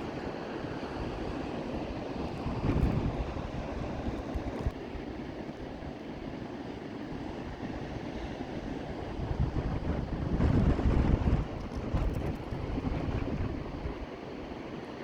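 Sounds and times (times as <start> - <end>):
wind buffeting microphone: 0.0 - 6.4, 7.1 - 14.3.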